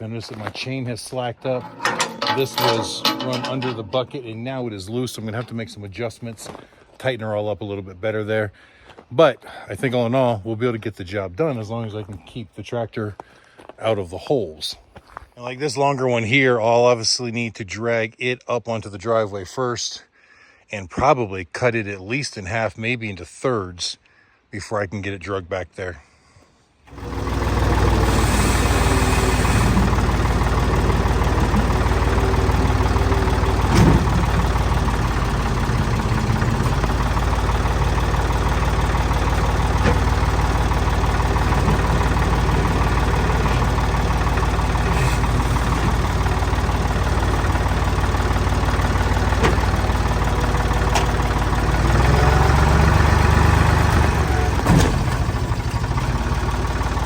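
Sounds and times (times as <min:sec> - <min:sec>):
tractor engine running: 0:00.0 - 0:06.2, 0:26.9 - 0:57.0.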